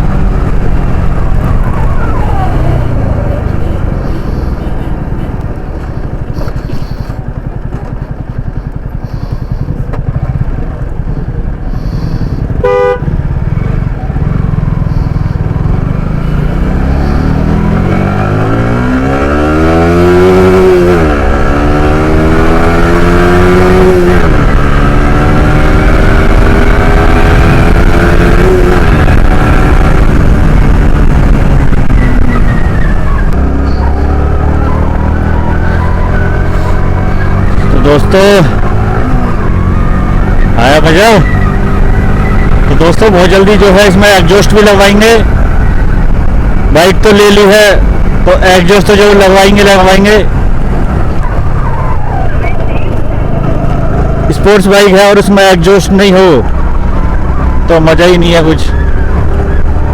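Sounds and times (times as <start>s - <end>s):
motorcycle engine revving: 0.0s - 59.9s
horn toot: 12.1s - 13.2s
wind rumble on microphone: 26.0s - 43.1s, 44.0s - 49.2s, 50.1s - 54.3s.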